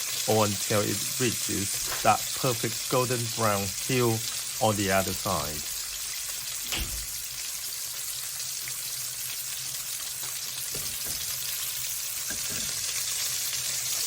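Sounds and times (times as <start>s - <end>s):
fish sizzling in a pan: 0.0s - 14.0s.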